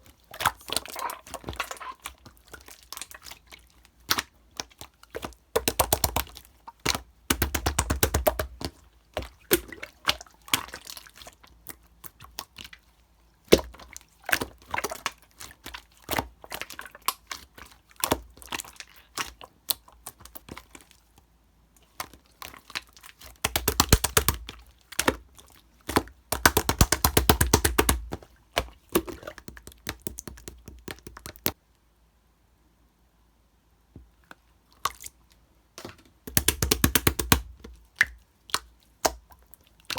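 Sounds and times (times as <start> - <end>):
slime crackling and popping: 23.3 - 25.2, 25.9 - 31.6.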